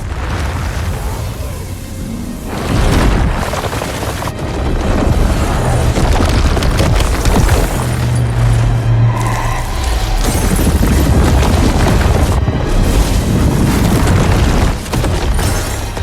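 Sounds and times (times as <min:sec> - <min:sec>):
deep rumble: 0:00.0 - 0:16.0
dramatic music: 0:00.0 - 0:16.0
heavy booming blasts: 0:00.0 - 0:16.0.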